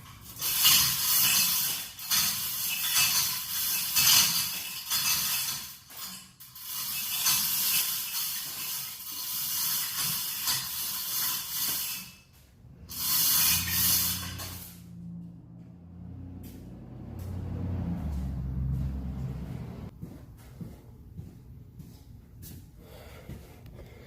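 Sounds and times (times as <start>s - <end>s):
chain hoist ratchet clicking: 0.0s - 12.2s, 12.9s - 14.9s.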